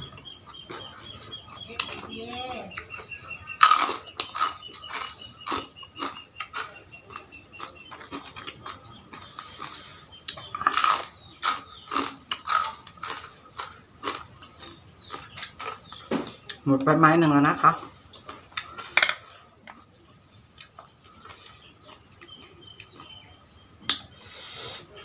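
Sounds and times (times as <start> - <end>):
wet chewing and biting: 2.7 - 16.6.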